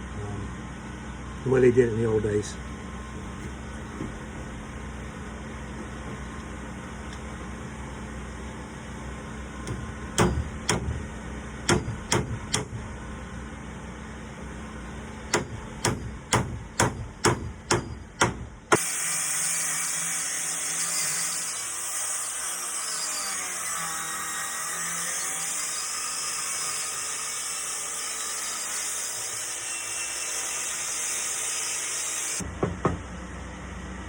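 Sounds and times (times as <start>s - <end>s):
hammer striking nails: 9.6s - 12.8s, 15.3s - 18.8s.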